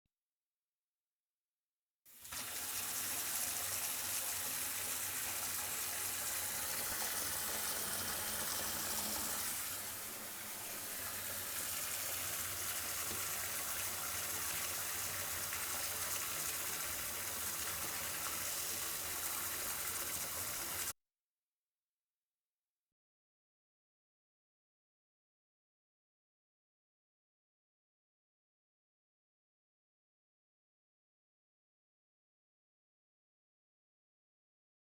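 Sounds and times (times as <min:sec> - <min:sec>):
water pouring into bathtub: 0:02.2 - 0:20.9.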